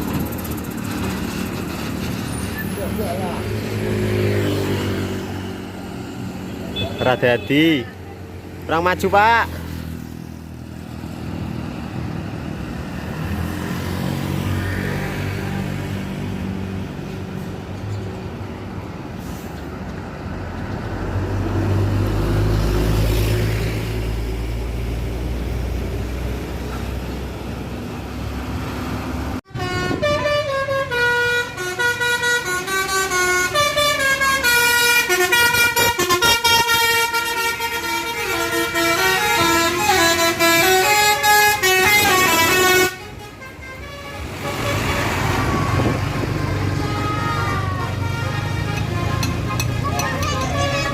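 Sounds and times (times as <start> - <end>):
heavy vehicle engine rumbling: 0.0 - 7.2, 7.8 - 50.9
bus musical horn playing tune: 29.4 - 50.9.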